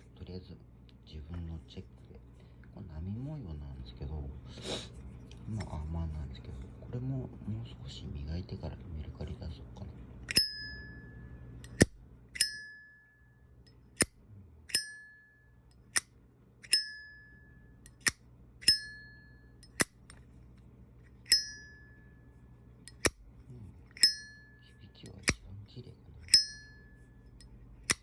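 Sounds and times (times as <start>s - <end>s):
lighter lid opening ching: 11.6s - 12.8s, 17.8s - 19.0s, 19.6s - 20.1s, 22.9s - 23.2s, 23.9s - 24.4s.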